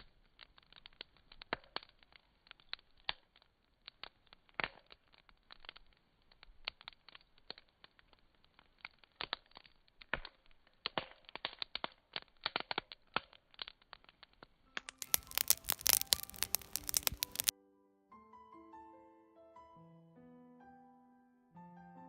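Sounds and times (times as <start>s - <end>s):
campfire crackling and popping: 0.0s - 17.5s
music: 14.9s - 22.0s.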